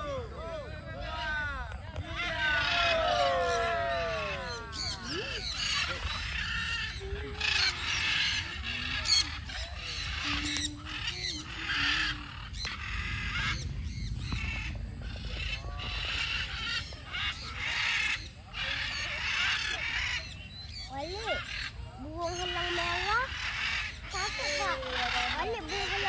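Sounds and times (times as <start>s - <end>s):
steady low rumble: 0.0s - 20.8s
parrots squawking and screeching: 2.0s - 26.0s.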